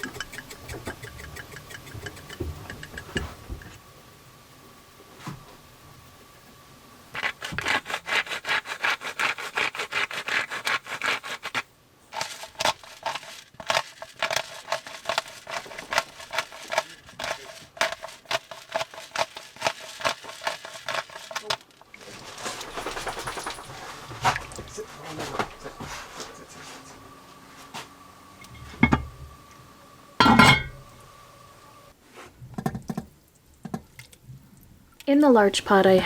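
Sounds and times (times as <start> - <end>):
utensil scraping cookware: 0.0 - 3.8, 7.2 - 21.6, 30.2 - 30.8.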